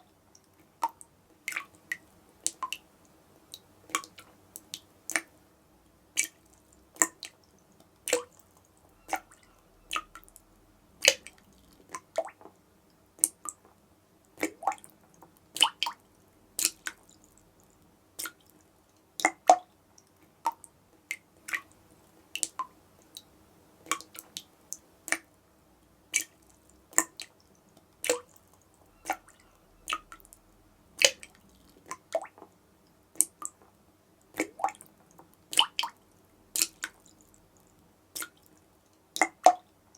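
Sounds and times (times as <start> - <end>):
water dripping from a tap: 0.3 - 5.3, 6.2 - 10.4, 11.0 - 12.6, 14.4 - 18.6, 22.4 - 25.3, 26.2 - 30.4, 31.0 - 32.5, 33.2 - 33.7, 34.3 - 38.6, 39.2 - 39.7.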